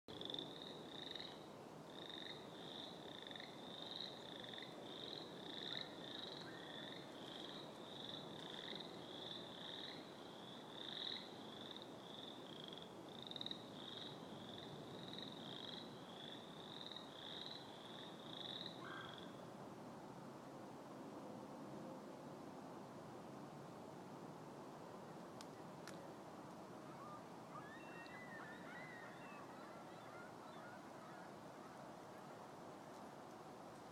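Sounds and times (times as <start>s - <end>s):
frog chorus: 0.1s - 19.5s, 26.9s - 32.4s.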